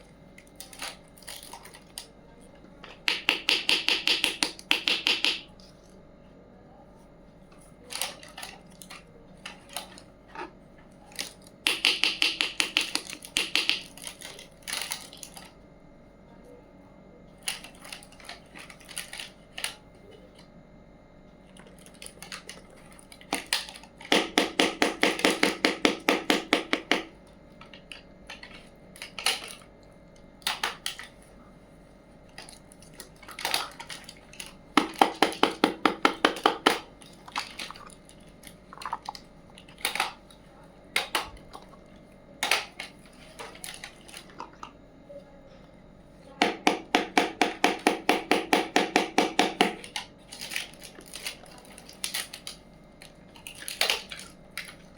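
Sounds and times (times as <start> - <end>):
toy pieces clicking and tapping: 3.0 - 5.5, 11.7 - 15.4.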